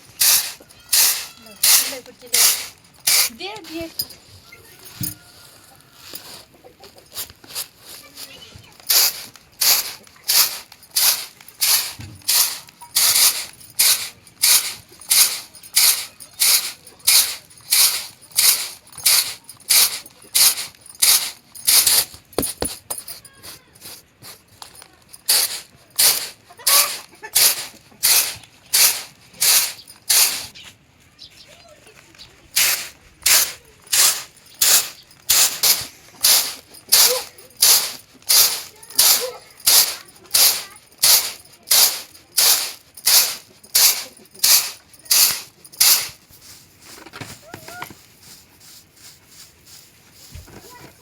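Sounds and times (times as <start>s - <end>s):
sharp striking strokes: 25.3s - 30.5s, 32.6s - 46.2s.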